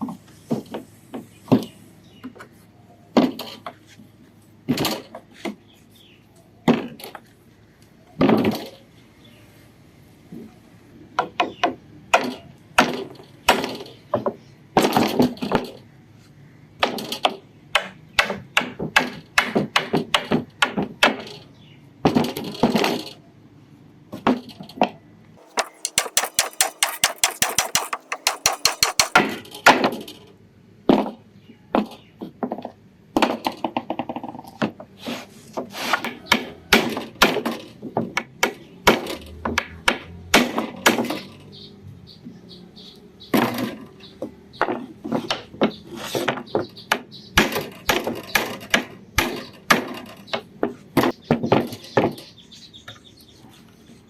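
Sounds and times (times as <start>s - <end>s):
fast light hammer taps: 25.4s - 29.2s
hammer knocking on wood: 25.4s - 29.2s.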